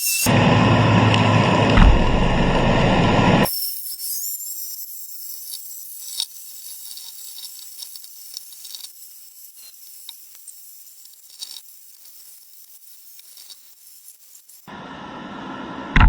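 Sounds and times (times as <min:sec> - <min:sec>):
faint clicks and crackles: 0:05.4 - 0:14.7.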